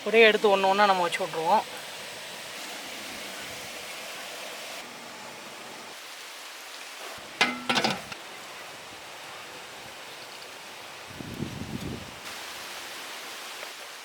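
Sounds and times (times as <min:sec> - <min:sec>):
metal plates clinking: 0:07.4 - 0:08.2.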